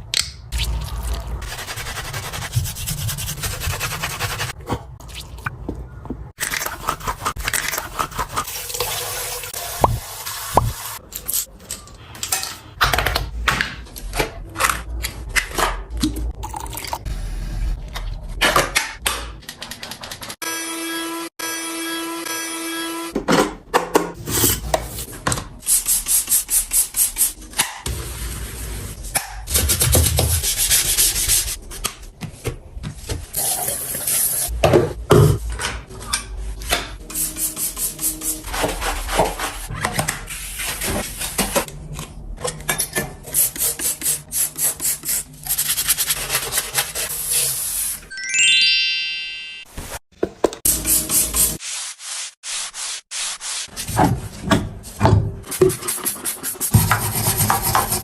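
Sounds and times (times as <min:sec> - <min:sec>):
upward sliding tone: 0:48.1 - 0:50.0.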